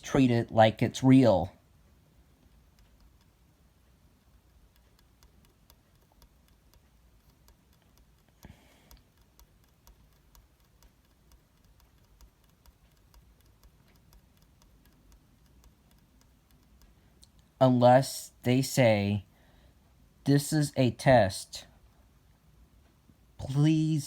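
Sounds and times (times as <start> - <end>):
faint irregular ticks: 2.2 - 17.6.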